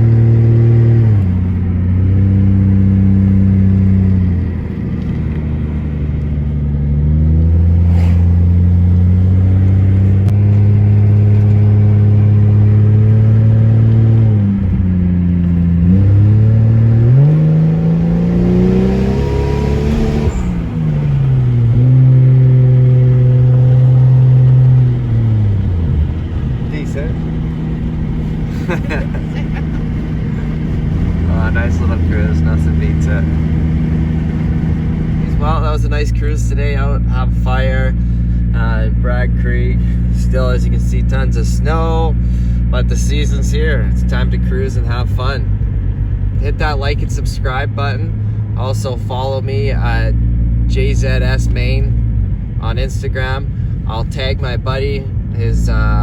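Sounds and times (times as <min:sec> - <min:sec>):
car engine cruising: 0:00.0 - 0:56.0.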